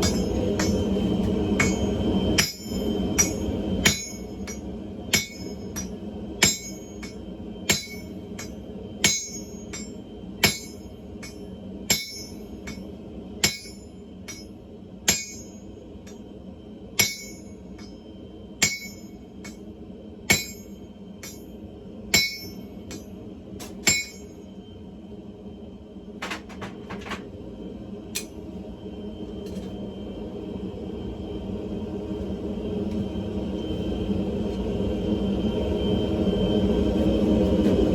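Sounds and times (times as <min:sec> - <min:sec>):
hammer striking steel on anvil: 0:00.0 - 0:01.0, 0:01.6 - 0:14.5, 0:15.1 - 0:16.2, 0:17.0 - 0:18.0, 0:18.6 - 0:19.6, 0:20.3 - 0:21.5, 0:22.1 - 0:24.4, 0:28.2 - 0:28.4
steady low hum: 0:00.0 - 0:37.9.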